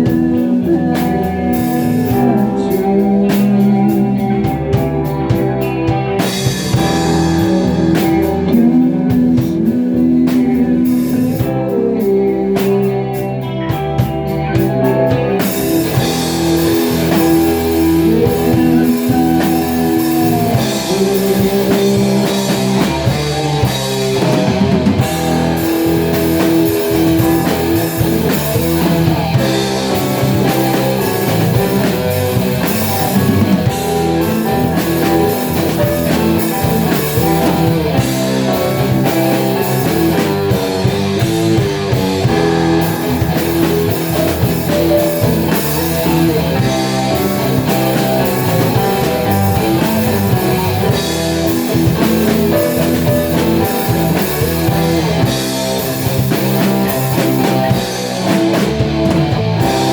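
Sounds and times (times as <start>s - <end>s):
drum kit beat: 0.0s - 59.9s
sustained guitar notes: 0.0s - 59.9s.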